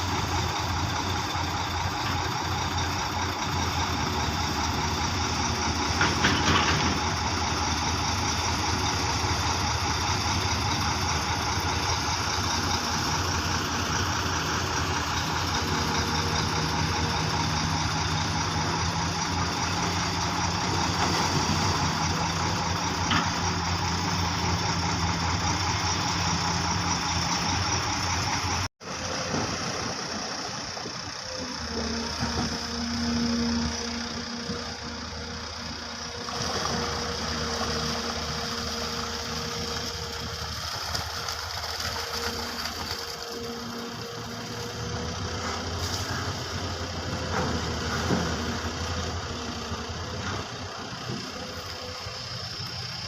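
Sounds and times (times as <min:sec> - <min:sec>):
excavator diesel engine running: 0:00.0 - 0:53.0.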